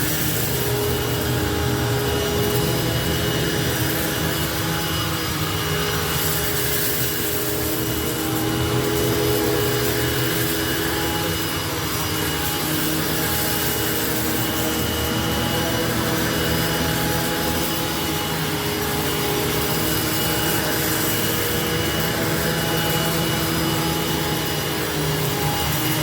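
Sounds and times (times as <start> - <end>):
upright vacuum cleaner running: 0.0 - 26.0.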